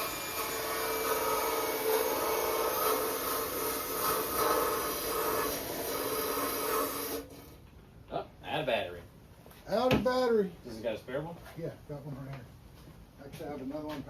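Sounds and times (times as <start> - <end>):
drill wire brush scratching metal: 0.0 - 7.6.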